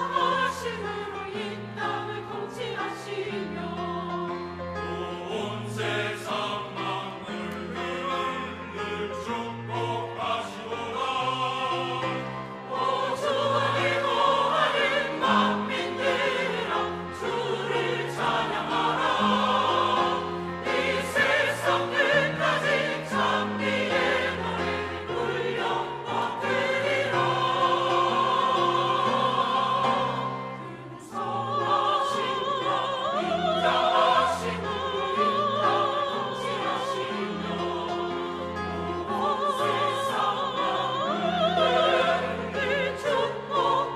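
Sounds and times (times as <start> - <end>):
choir singing: 0.0 - 43.9.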